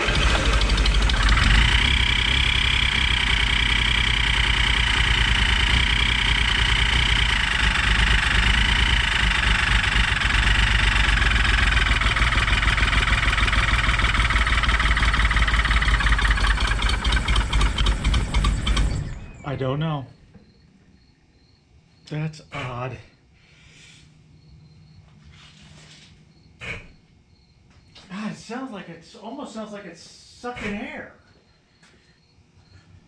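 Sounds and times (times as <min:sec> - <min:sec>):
car engine idling: 0:00.0 - 0:19.7.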